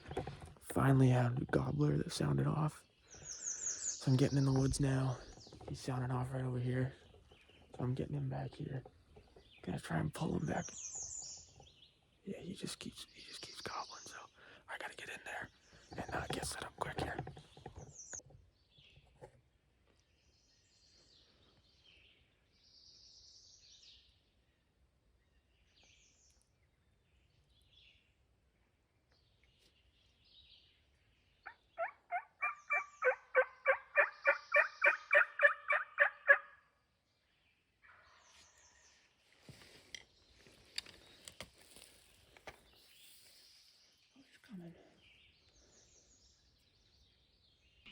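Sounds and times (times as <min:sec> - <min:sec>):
faint songbird chirps: 0:00.0 - 0:47.9
turkey call yelps: 0:31.5 - 0:36.6.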